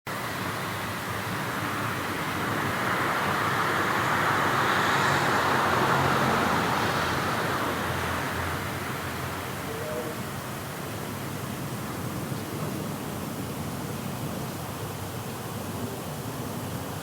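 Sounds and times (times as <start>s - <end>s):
street traffic: 0.1s - 17.0s
vehicle passing: 2.5s - 9.7s.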